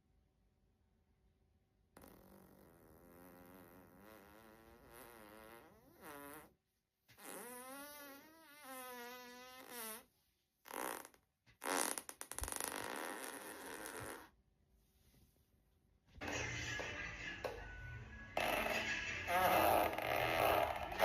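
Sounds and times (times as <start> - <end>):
person farting: 2.0 - 14.4, 18.4 - 21.0.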